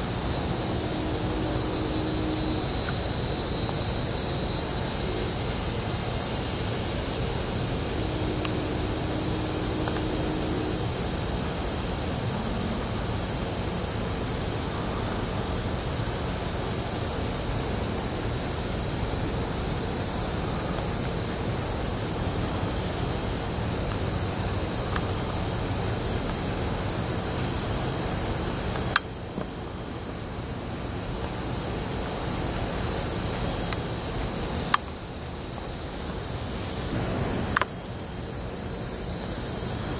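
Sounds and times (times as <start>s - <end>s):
continuous low rumble: 0.0s - 39.9s
crickets and insects chirping: 0.0s - 39.9s
click: 28.8s - 29.1s.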